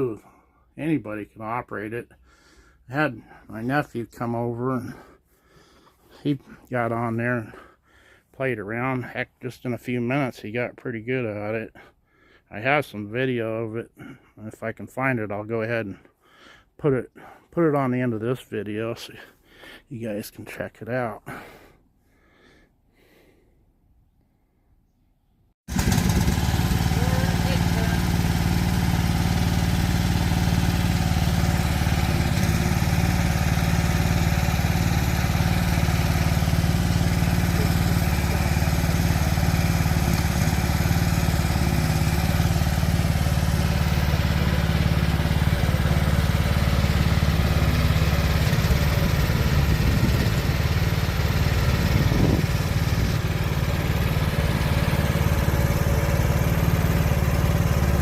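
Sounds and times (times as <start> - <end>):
excavator engine idling: 25.7 - 58.0.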